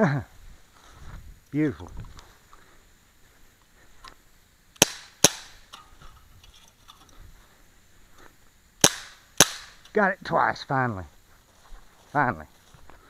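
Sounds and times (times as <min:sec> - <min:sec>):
air pistol shots: 0:04.8 - 0:05.7, 0:08.8 - 0:09.8.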